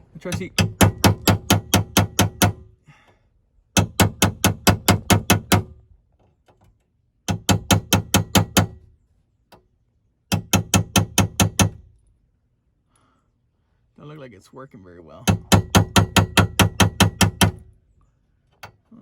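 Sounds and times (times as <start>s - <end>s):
hammer tapping on metal: 0.3s - 2.6s, 3.8s - 5.7s, 10.3s - 11.8s, 15.2s - 17.6s.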